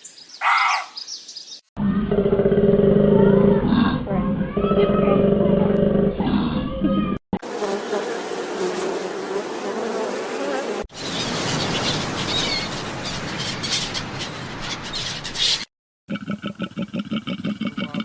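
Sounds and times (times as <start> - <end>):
flying insect buzzing: 7.4 - 11.5.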